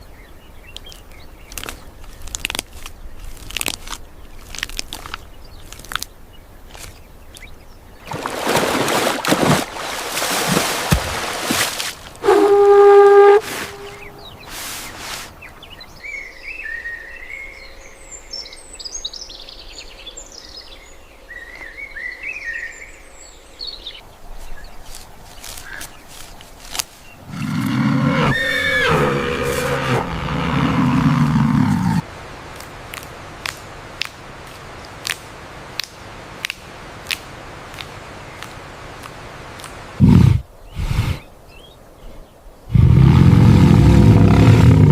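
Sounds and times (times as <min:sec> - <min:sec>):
low animal call: 0:12.2 - 0:14.4, 0:27.3 - 0:32.0, 0:42.7 - 0:44.9
bird chirping: 0:12.2 - 0:26.3.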